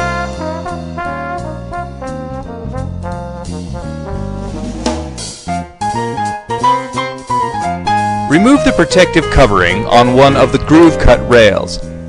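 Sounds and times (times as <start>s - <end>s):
jazzy brass music: 0.0s - 12.0s
walking bass line: 0.0s - 12.0s.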